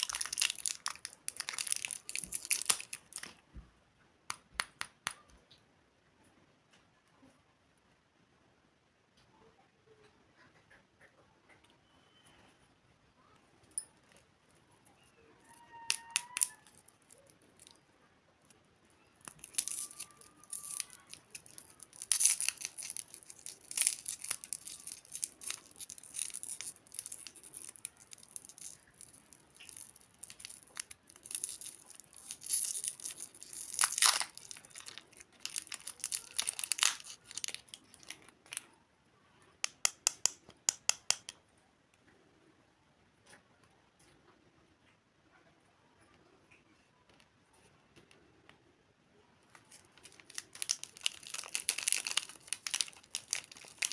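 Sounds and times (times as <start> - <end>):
candy wrapper crinkling: 0.0 - 3.4, 14.9 - 38.8, 39.6 - 41.4, 49.4 - 53.9.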